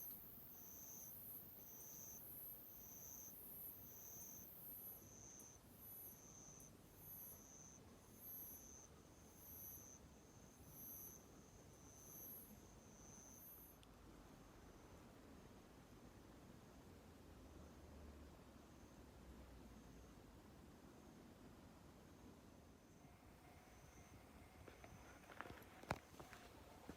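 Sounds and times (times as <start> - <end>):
insect chirping: 0.0 - 13.8, 22.8 - 26.0.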